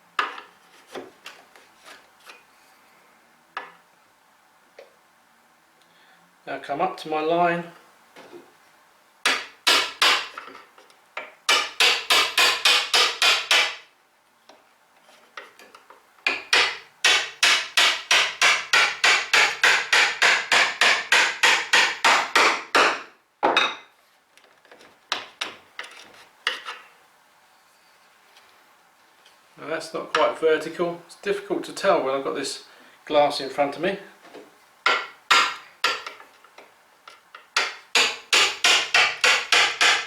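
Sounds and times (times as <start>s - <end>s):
hammer striking chisel in wood: 9.2s - 10.6s, 11.2s - 13.8s, 16.3s - 23.8s, 34.9s - 36.2s, 37.4s - 40.0s.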